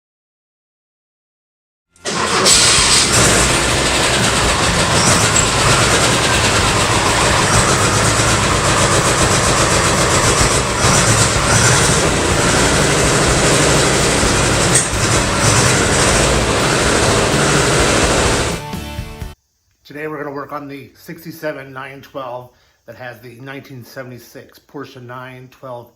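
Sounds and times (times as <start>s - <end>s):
car engine running: 2.0s - 18.8s.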